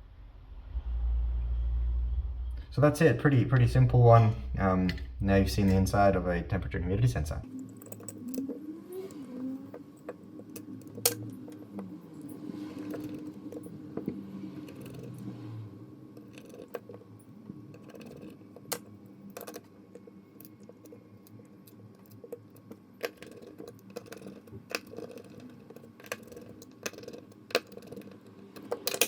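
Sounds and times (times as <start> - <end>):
faint steady hum: 0.0 - 29.0
small parts clicking and tapping: 7.5 - 15.3, 16.2 - 29.0.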